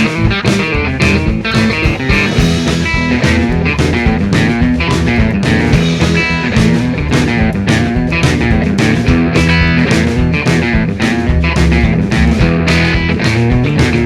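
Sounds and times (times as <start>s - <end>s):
rock music: 0.0s - 14.0s.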